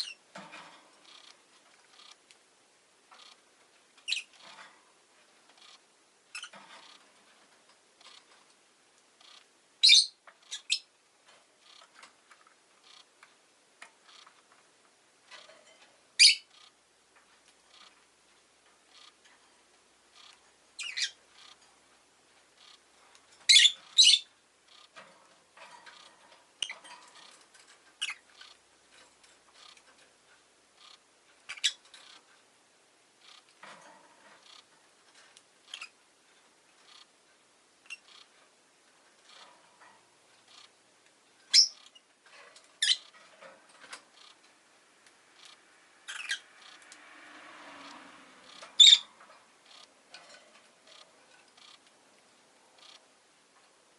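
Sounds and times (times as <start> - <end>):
lovebird chirping: 0.0 - 0.3, 4.0 - 4.6, 5.5 - 7.0, 9.2 - 10.9, 16.2 - 16.7, 20.1 - 21.6, 23.4 - 24.9, 28.0 - 28.6, 30.8 - 32.2, 35.6 - 36.0, 37.8 - 38.3, 41.5 - 42.1, 42.7 - 43.2, 45.4 - 46.8, 48.4 - 49.9.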